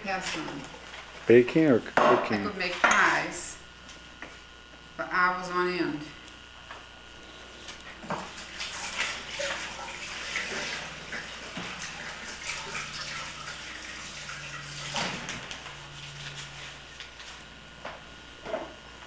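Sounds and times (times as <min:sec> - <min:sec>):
tap water splashing in sink: 0:08.1 - 0:16.7.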